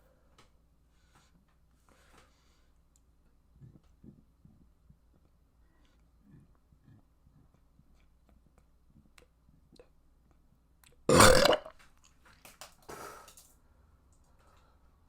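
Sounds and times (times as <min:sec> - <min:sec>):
person burping loudly: 0:11.1 - 0:11.7.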